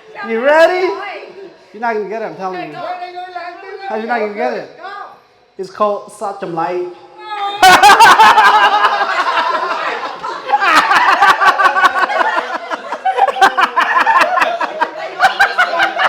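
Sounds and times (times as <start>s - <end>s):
people laughing: 7.6s - 16.0s.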